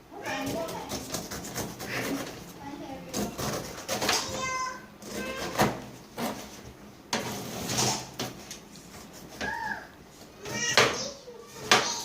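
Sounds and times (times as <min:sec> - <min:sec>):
knife cutting pineapple skin: 0:00.4 - 0:02.4, 0:03.1 - 0:04.4.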